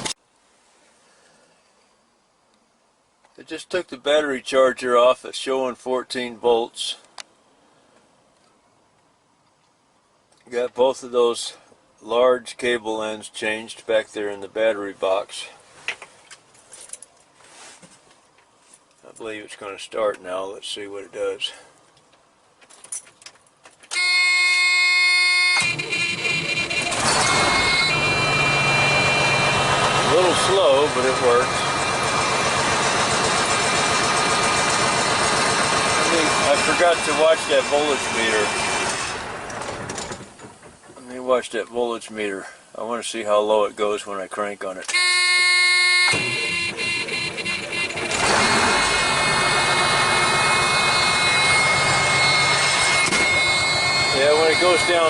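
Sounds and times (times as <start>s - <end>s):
diesel engine rumbling: 25.5s - 41.4s, 44.9s - 55.0s
starter motor whine: 25.6s - 40.8s, 44.9s - 55.0s.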